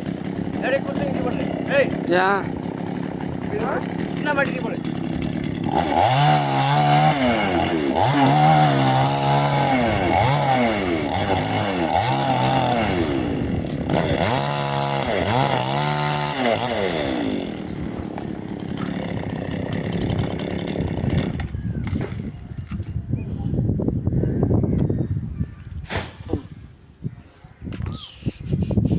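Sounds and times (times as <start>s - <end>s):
chainsaw revving while cutting: 0.0s - 22.3s.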